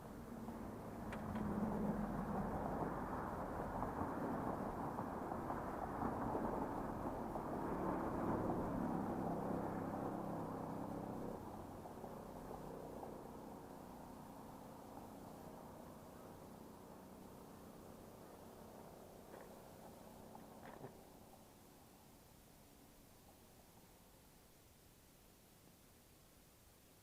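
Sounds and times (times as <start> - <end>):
motor vehicle passing by: 0.4 - 21.0.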